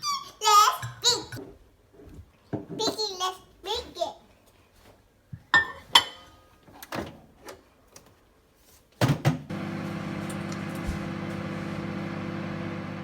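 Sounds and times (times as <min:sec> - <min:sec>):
microwave oven humming: 0:09.5 - 0:13.0.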